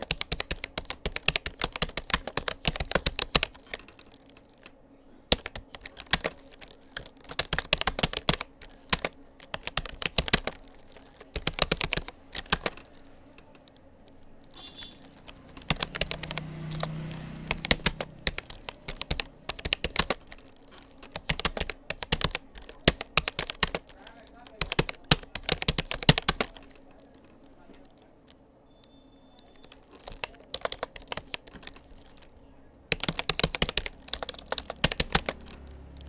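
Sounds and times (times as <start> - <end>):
keyboard key clicks: 29.4 - 36.0.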